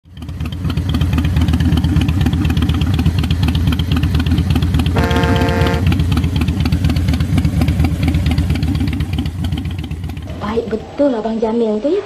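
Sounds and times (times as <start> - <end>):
motor engine running: 0.0 - 11.0
horn sounding: 4.9 - 6.0.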